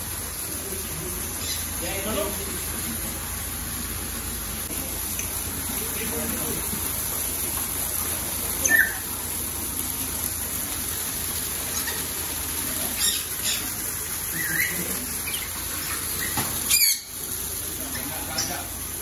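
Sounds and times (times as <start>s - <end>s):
steady hiss: 0.0s - 19.0s
small birds chirping: 1.4s - 1.9s, 8.6s - 9.0s, 12.8s - 17.2s.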